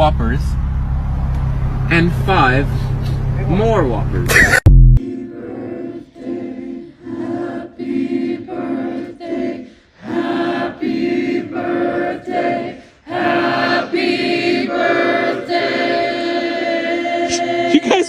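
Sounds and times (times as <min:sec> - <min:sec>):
choir singing a cappella: 0:05.0 - 0:18.0.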